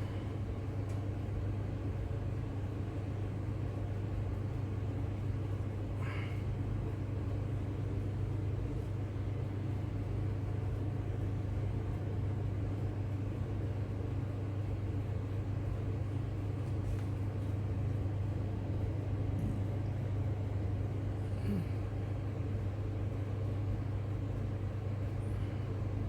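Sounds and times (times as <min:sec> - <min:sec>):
fan oven humming: 0:00.0 - 0:26.0.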